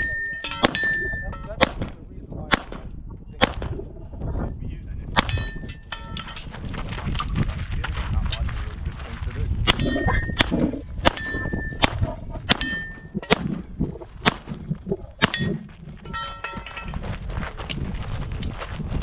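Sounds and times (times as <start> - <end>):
steel target plates ringing: 0.0 - 1.6, 5.3 - 6.4, 9.7 - 10.4, 11.1 - 11.8, 12.5 - 13.4, 15.2 - 17.0
pistol shots: 0.6 - 3.8, 5.2 - 5.6, 9.7 - 14.6, 15.2 - 15.6.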